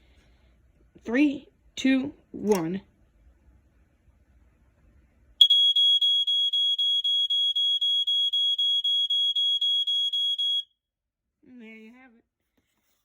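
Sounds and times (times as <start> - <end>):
smoke alarm pulsing tone: 5.4 - 10.7.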